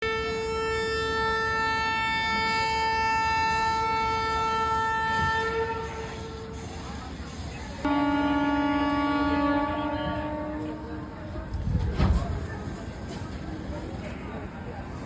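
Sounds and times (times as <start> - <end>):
locomotive horn blast: 0.0 - 6.6, 7.9 - 11.1.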